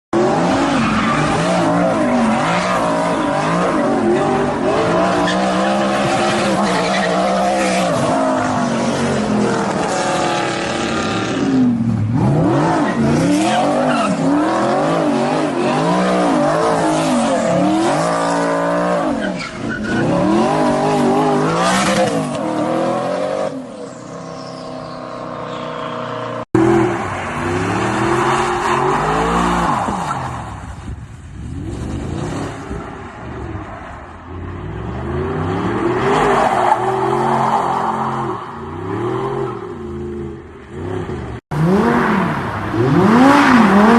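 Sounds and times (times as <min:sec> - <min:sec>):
car engine revving hard: 0:40.8 - 0:43.9.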